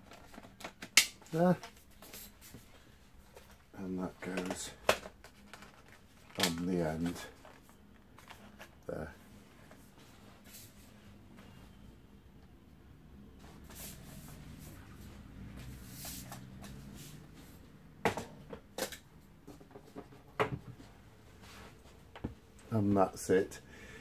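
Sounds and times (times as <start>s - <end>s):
plastic parts being handled: 0.0s - 2.6s, 3.2s - 8.9s.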